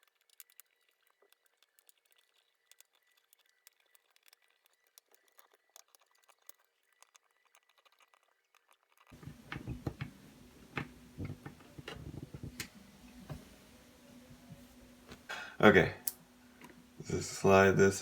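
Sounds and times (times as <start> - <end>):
small plastic clicks and taps: 0.0 - 13.5.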